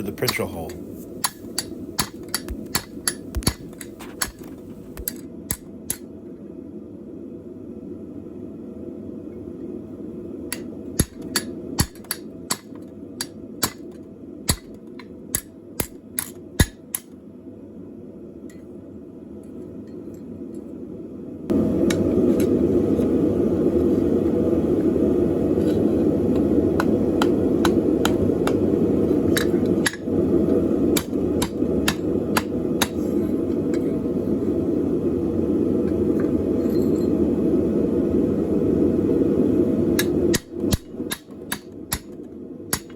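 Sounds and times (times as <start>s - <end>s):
hammer striking steel on anvil: 0.0s - 4.4s, 40.0s - 42.9s
steady rushing noise: 0.0s - 5.1s, 21.5s - 42.7s.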